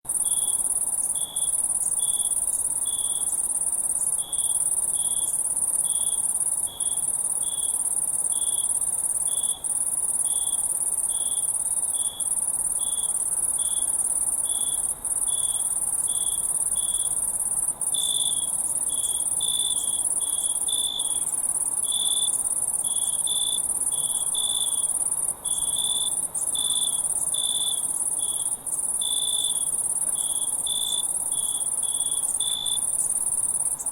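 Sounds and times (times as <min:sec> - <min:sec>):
crickets chirping: 0:00.1 - 0:33.9.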